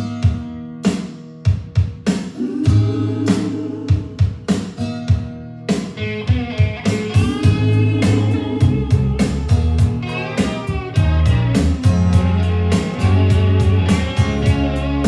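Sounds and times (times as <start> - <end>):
blues rock music: 0.0 - 15.0.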